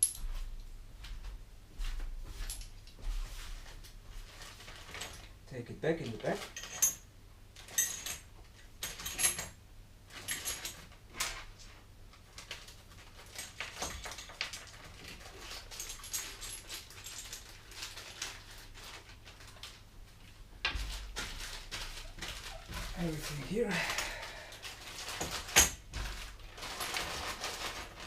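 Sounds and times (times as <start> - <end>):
plastic bags rustling: 12.2 - 28.0.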